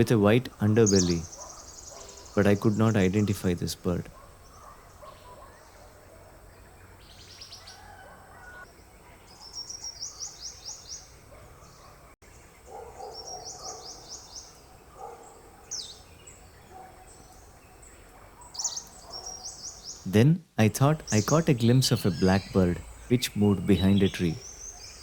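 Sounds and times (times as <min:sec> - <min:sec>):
birds singing: 0:00.0 - 0:25.0.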